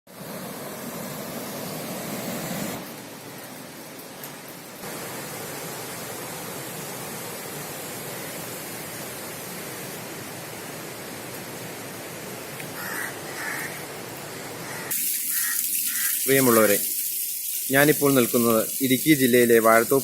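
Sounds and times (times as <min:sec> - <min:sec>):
steady rushing hiss: 0:00.1 - 0:20.0
bird calling: 0:12.6 - 0:16.3.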